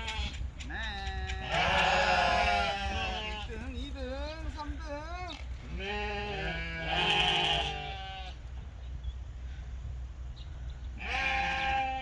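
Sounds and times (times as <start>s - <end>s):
sheep bleating: 0.0s - 0.4s, 1.0s - 3.7s, 5.6s - 8.4s, 11.0s - 12.0s.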